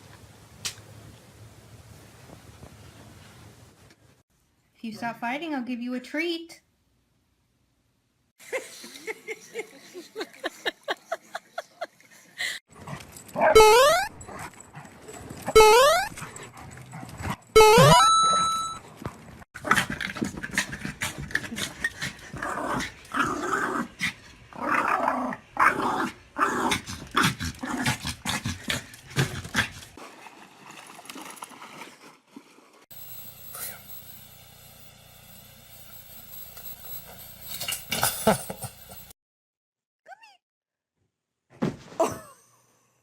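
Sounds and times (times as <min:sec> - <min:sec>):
dogs growling: 0:19.6 - 0:29.9.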